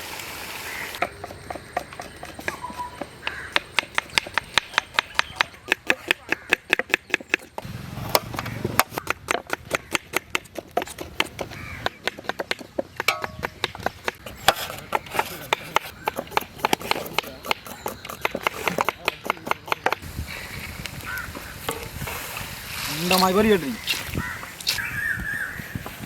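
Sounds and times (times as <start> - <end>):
knife chopping on wooden board: 1.0 - 20.0.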